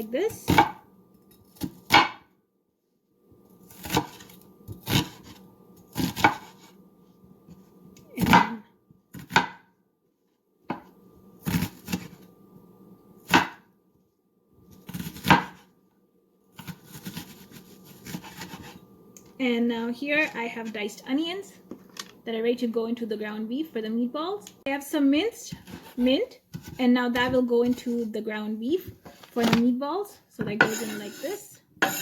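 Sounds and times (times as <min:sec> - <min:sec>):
knife chopping on cutting board: 0:01.6 - 0:02.3, 0:03.8 - 0:06.7, 0:09.2 - 0:09.6, 0:13.3 - 0:13.6, 0:14.9 - 0:15.6, 0:16.6 - 0:18.8, 0:31.8 - 0:32.0.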